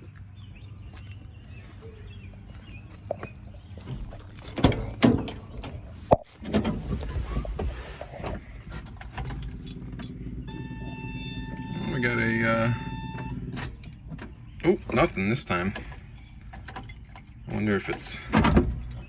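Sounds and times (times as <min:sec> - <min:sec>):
engine cranking without starting: 0:09.4 - 0:13.5
steady tone: 0:10.5 - 0:13.5.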